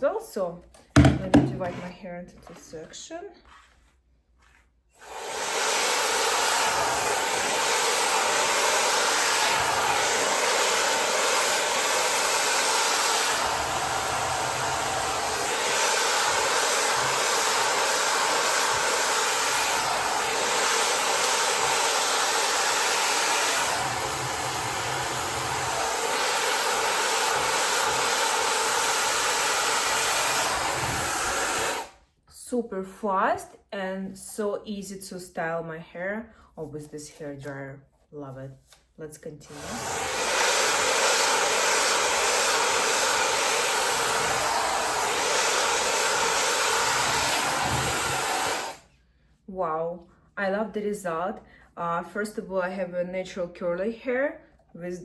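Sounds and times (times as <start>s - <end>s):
hair dryer blowing: 1.0s - 1.8s, 5.0s - 32.0s, 39.4s - 48.9s.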